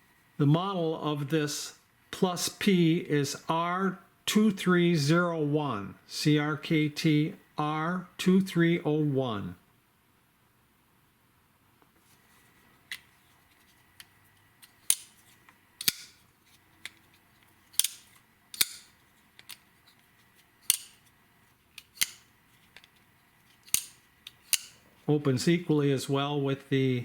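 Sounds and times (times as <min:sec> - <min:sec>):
folding knife clicking open and shut: 0:14.6 - 0:15.1, 0:15.8 - 0:16.2, 0:17.7 - 0:19.6, 0:20.6 - 0:21.0, 0:21.8 - 0:22.9, 0:23.6 - 0:24.8.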